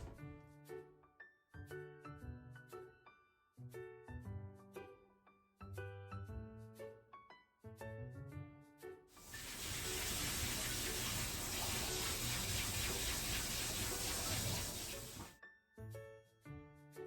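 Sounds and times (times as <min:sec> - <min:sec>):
light piano music: 0:00.0 - 0:17.0
tap running into sink: 0:09.2 - 0:15.3.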